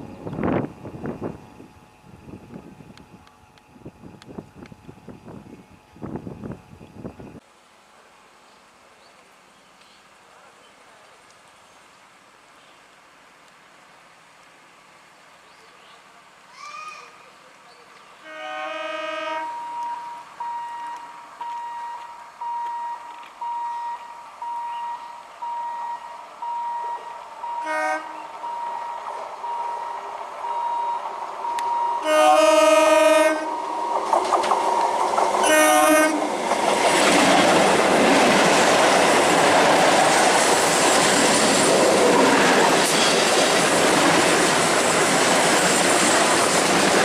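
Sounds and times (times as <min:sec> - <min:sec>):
train rumble and wheel clatter: 0:00.0 - 0:07.4, 0:19.5 - 0:47.0
train horn blasts: 0:18.2 - 0:34.0, 0:35.4 - 0:36.3
short beeps: 0:19.4 - 0:32.1.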